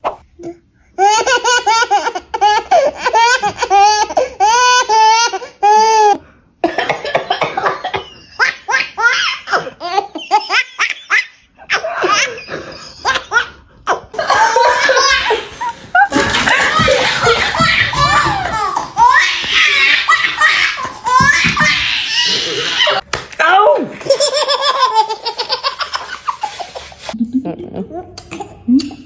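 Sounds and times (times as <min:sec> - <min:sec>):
baby laughing: 0:01.0 - 0:06.2, 0:06.8 - 0:23.1, 0:24.0 - 0:29.0.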